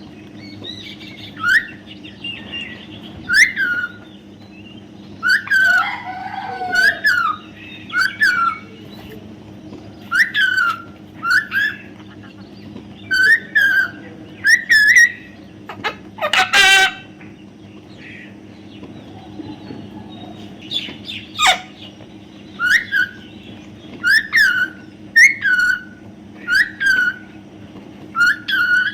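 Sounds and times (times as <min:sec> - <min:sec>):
fast rattling parrot call: 0:00.8 - 0:04.1, 0:05.2 - 0:08.7, 0:10.1 - 0:17.2, 0:20.7 - 0:27.4, 0:28.1 - 0:28.9
parrot squawking: 0:01.4 - 0:01.8, 0:03.3 - 0:04.0, 0:05.2 - 0:08.7, 0:10.1 - 0:17.2, 0:21.2 - 0:21.9, 0:22.6 - 0:23.2, 0:24.0 - 0:27.3, 0:28.1 - 0:28.9.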